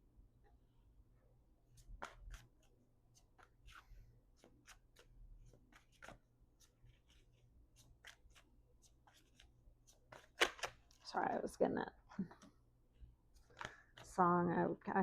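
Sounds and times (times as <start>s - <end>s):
cards clicking and rustling: 1.9s - 11.0s, 13.3s - 14.1s.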